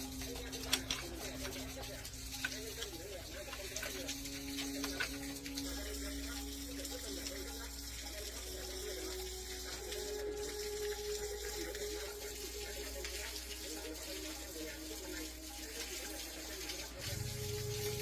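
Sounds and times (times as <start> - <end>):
water running: 0.0 - 18.0.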